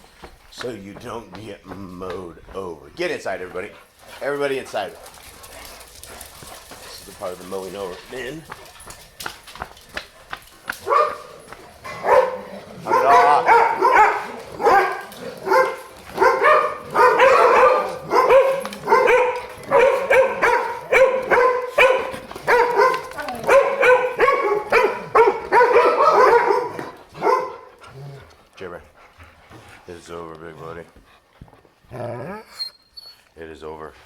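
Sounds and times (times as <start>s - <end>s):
dog yelping barks: 10.8s - 27.7s.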